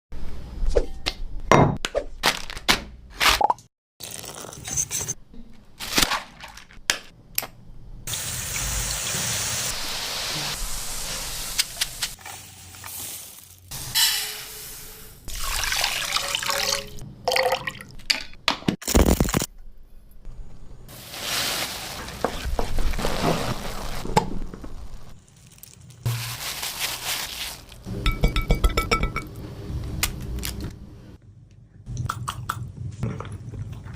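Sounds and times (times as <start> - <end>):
utensils knocking and clinking: 28.1 - 29.3.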